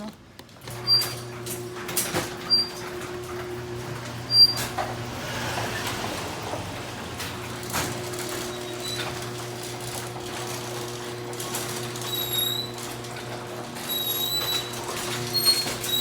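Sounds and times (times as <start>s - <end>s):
garage door opener motor hum: 0.5s - 16.0s
short high squeaks: 0.8s - 1.3s, 2.4s - 2.8s, 4.3s - 4.8s, 13.9s - 16.0s.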